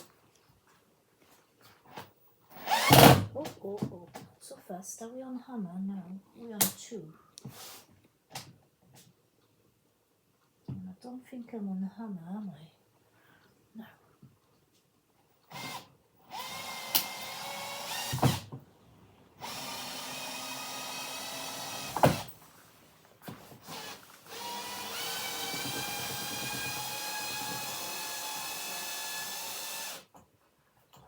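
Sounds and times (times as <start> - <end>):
power drill motor whine: 2.6 - 3.2, 15.5 - 18.4, 19.4 - 22.3, 23.6 - 30.0.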